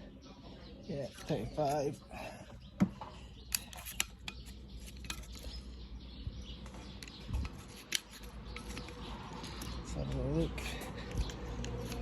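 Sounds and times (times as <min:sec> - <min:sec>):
metallic clicks and scrapes of tool: 0:03.5 - 0:05.6, 0:07.0 - 0:09.8, 0:10.8 - 0:12.0.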